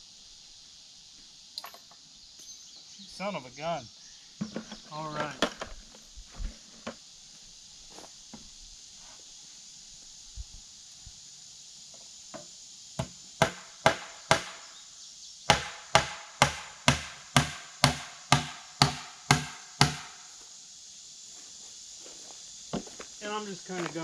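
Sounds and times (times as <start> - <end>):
hammer driving nails: 13.0 - 14.6, 15.5 - 20.1.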